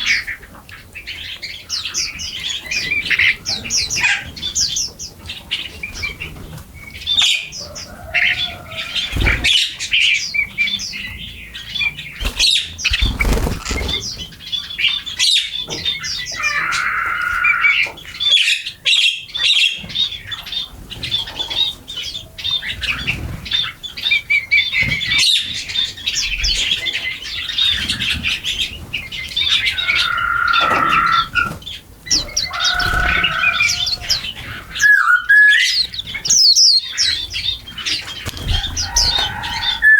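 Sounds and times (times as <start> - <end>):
small birds chirping: 0.0 - 39.9
wing flutters: 12.2 - 14.3, 32.4 - 34.2.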